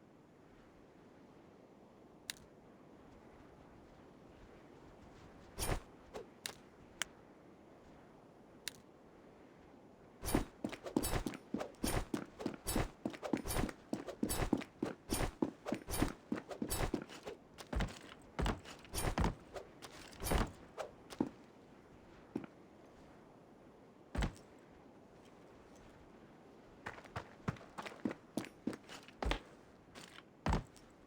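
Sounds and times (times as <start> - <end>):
sharp knocks and thuds: 10.2 - 21.3, 24.2 - 24.4, 30.5 - 30.8.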